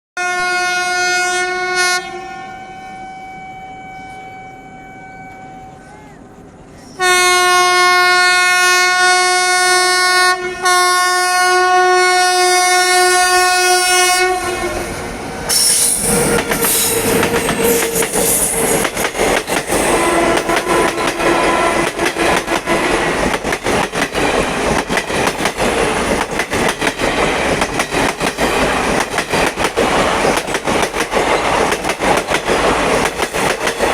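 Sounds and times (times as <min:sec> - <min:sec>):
locomotive twin-tone horn: 0:00.2 - 0:05.9, 0:07.0 - 0:18.8, 0:19.8 - 0:23.2
train wheels clickety-clack: 0:15.5 - 0:33.9.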